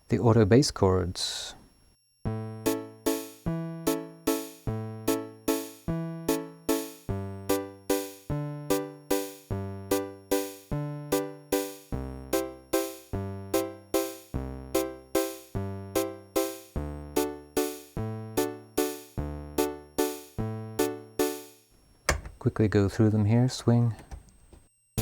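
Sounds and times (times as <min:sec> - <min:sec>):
keyboard bass notes: 0:02.3 - 0:21.4
organ-like chord stabs: 0:02.3 - 0:21.5
clicky drum machine hits: 0:22.1 - 0:22.5.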